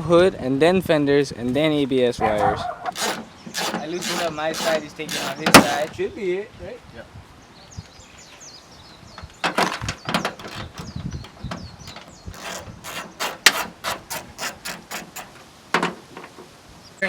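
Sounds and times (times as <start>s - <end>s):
socket ratchet clicking: 2.9s - 5.8s.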